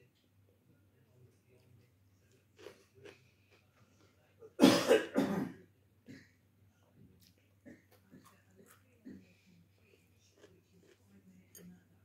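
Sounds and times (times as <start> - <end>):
person coughing: 4.6 - 6.3.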